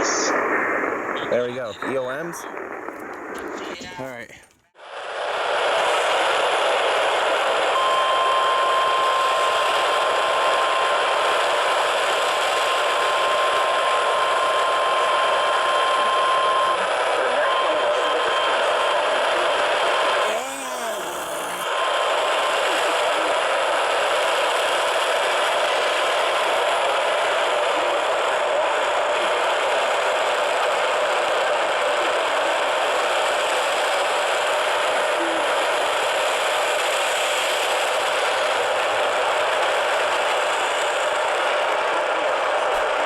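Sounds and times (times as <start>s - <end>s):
faint steady tone: 7.7s - 11.2s.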